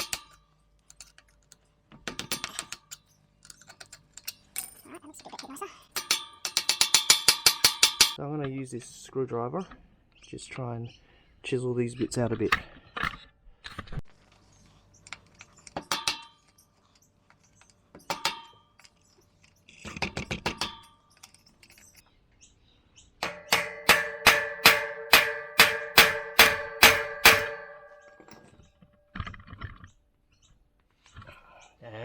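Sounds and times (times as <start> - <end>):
hammer striking screwdriver: 23.2 - 28.2.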